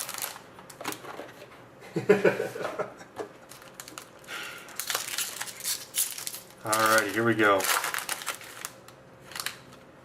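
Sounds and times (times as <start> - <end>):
packaging clicks and rustling: 0.0 - 1.3, 3.5 - 9.8.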